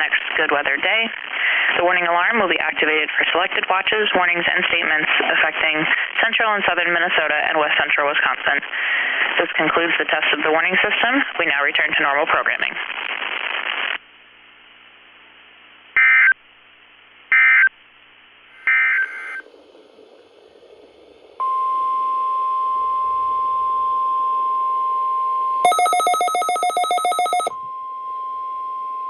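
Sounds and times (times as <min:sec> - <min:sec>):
emergency alert data bursts: 0:25.6 - 0:27.5
single-pitch warning alarm tone: 0:25.6 - 0:28.0.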